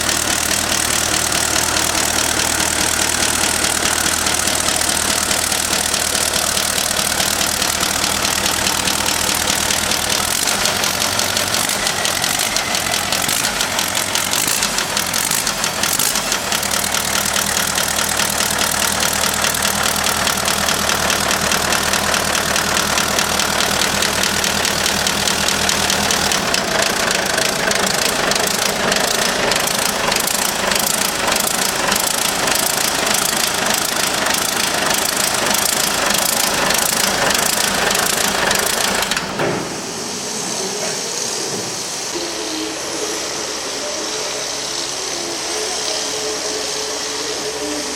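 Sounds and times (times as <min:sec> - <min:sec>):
diesel engine knocking: 0:00.0 - 0:39.9.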